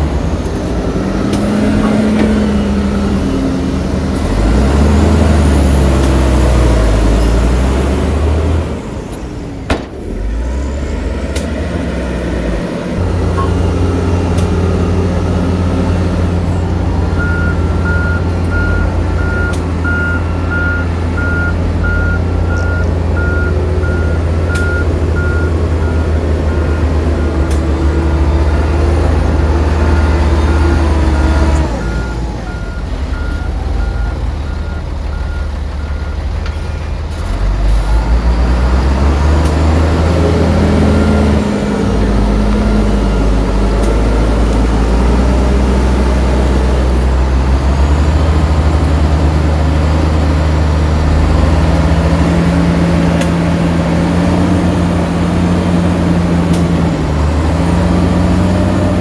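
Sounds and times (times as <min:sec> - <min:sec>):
diesel machinery engine revving: 0:00.0 - 0:59.0
reversing alarm beeping: 0:13.0 - 0:15.4, 0:16.6 - 0:36.3.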